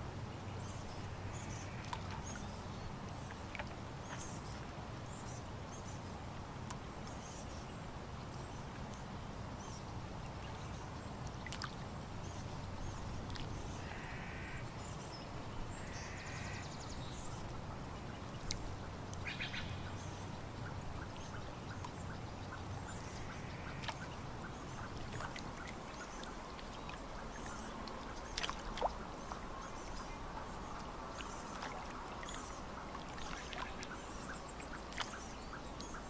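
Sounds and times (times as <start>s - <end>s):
water lapping: 10.3s - 36.0s.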